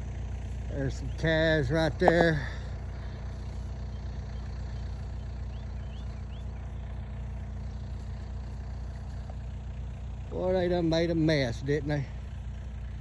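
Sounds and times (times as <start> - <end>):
engine idling: 0.0 - 13.0.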